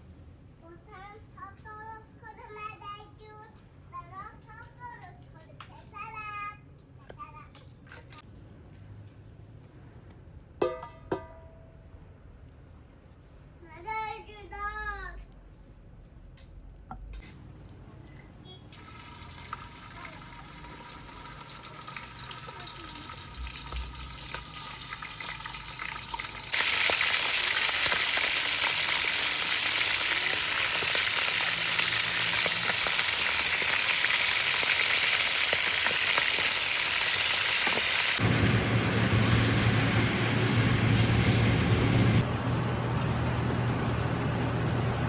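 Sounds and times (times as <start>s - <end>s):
food sizzling in hot oil: 18.7s - 44.9s
low engine hum: 38.2s - 45.0s.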